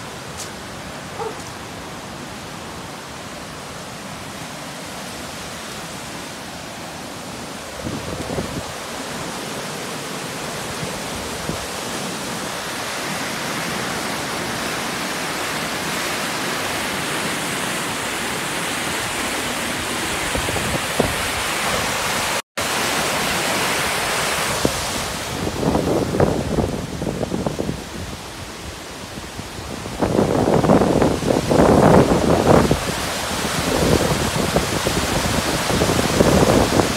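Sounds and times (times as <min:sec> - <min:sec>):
flooded stream roaring: 0:00.0 - 0:36.9
wind buffeting microphone: 0:07.7 - 0:09.2, 0:20.1 - 0:22.0, 0:24.6 - 0:36.9.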